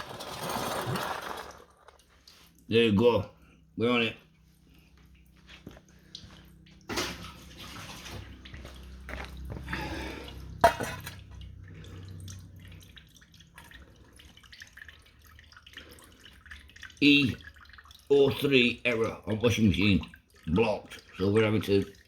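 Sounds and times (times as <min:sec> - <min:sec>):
water splashing and dripping: 0:04.7 - 0:22.0.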